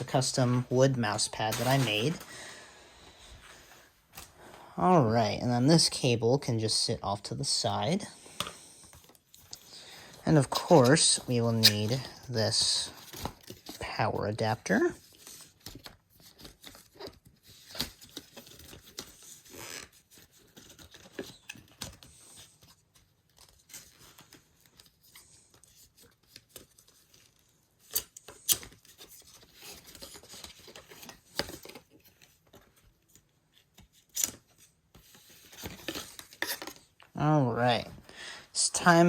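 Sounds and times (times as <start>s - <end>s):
wrapping tearing and rustling: 0.0s - 2.5s, 8.7s - 37.0s.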